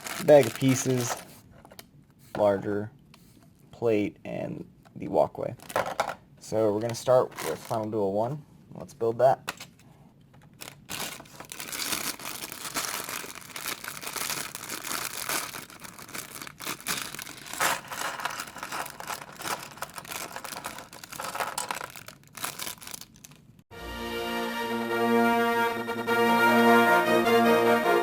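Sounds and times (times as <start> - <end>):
plastic bag crinkling: 0.0 - 1.3, 7.2 - 7.9, 10.5 - 23.6.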